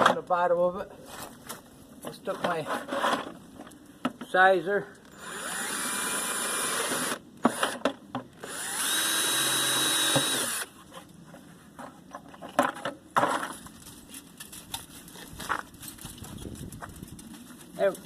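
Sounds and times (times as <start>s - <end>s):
electric power tool whining: 5.0s - 7.8s, 8.4s - 10.7s
metal knocks and clatter: 11.8s - 17.3s.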